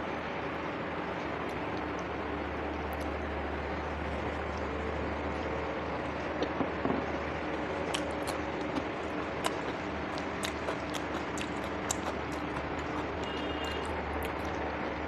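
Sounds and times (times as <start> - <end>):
steady background hum: 0.0 - 15.0
chewing clicks and smacks: 2.8 - 3.2, 7.8 - 14.6.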